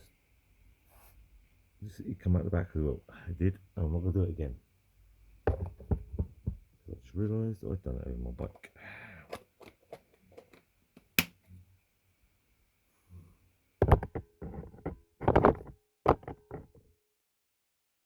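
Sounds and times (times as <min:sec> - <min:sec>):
loud knocks and clatters: 0:13.8 - 0:16.8.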